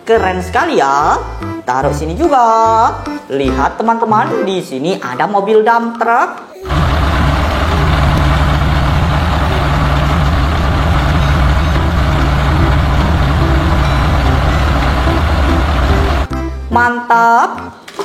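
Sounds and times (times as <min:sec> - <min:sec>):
truck engine idling: 0:06.7 - 0:16.3.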